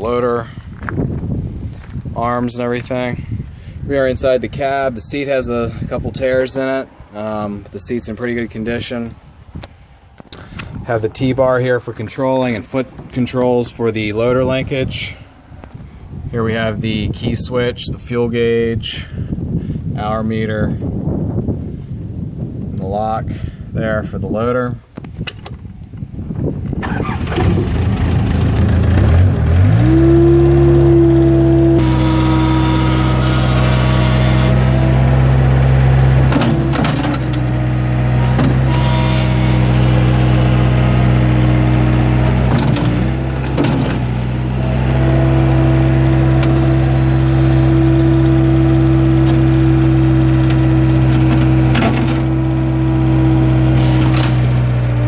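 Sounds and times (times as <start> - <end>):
loader engine starting and running: 1.4 - 17.0, 26.8 - 55.0.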